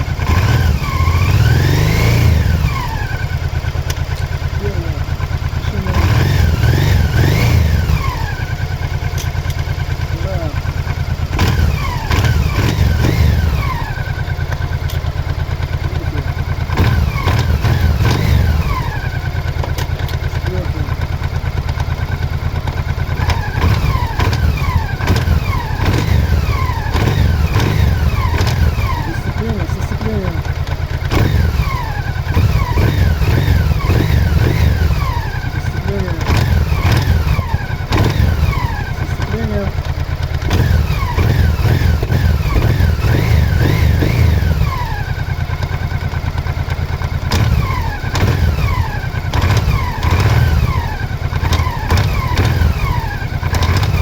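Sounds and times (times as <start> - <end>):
motorcycle engine revving: 0.0 - 54.0
sharp engine knocks: 23.1 - 29.0, 36.1 - 43.2, 46.7 - 50.8, 51.4 - 54.0.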